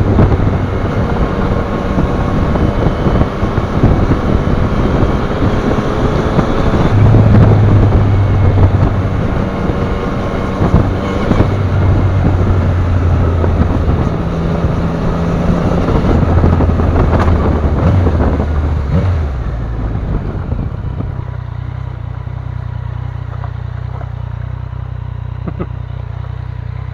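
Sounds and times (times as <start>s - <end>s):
wind on microphone: 0.0s - 21.5s
motorcycle engine running: 0.0s - 26.9s.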